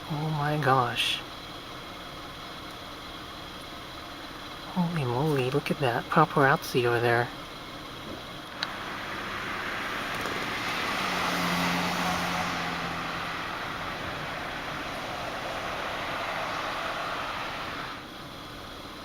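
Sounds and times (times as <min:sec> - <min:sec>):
vehicle passing by: 0:08.6 - 0:18.1.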